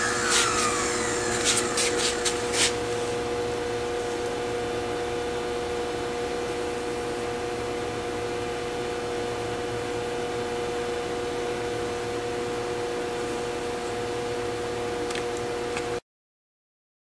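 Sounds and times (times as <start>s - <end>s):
vacuum running: 0.0s - 9.9s.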